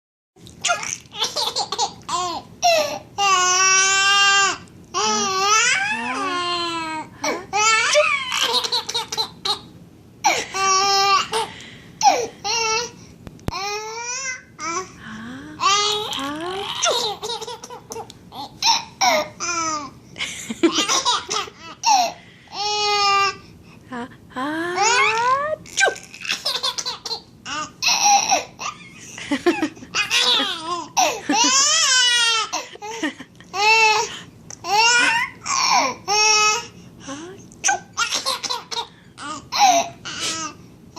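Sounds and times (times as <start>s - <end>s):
baby laughing: 0.6s - 2.9s, 7.6s - 12.8s, 15.8s - 19.8s, 20.6s - 22.2s, 24.8s - 34.0s, 34.6s - 36.3s, 37.6s - 40.5s
baby laughing and squealing: 27.8s - 32.9s, 34.7s - 36.3s.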